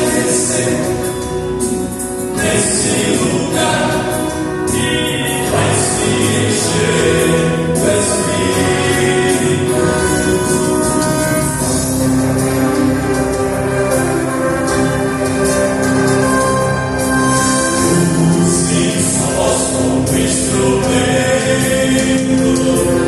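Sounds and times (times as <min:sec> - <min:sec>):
instrumental accompaniment: 0:00.0 - 0:23.0
vocal quartet singing a hymn: 0:00.0 - 0:23.0.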